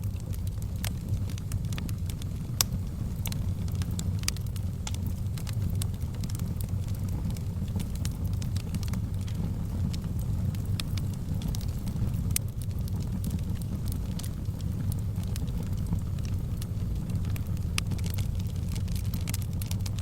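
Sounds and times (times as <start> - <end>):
low rumble of flames: 0.0 - 20.0
wood fire crackling and popping: 0.0 - 20.0.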